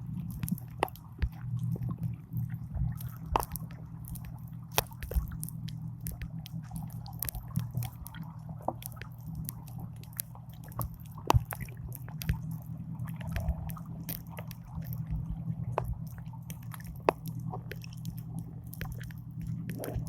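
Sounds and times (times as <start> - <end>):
small clicks and crackles: 0.0 - 20.0
steady low hum: 0.0 - 20.0.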